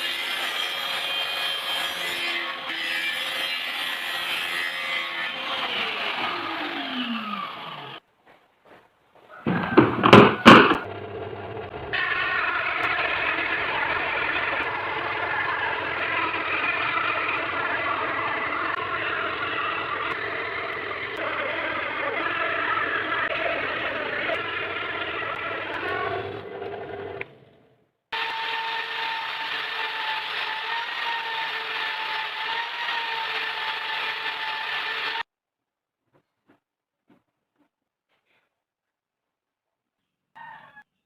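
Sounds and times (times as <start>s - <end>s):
electric power tool motor: 5.4s - 8.0s, 10.4s - 27.4s, 28.2s - 35.2s
loud knocks: 9.4s - 11.0s.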